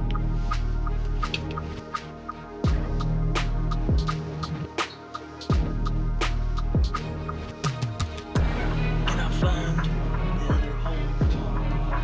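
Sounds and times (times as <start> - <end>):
held bass: 0.0 - 4.8, 5.5 - 12.0
electronic music with steady beat: 0.0 - 12.0
deep kick drums: 2.6 - 4.6, 5.5 - 12.0.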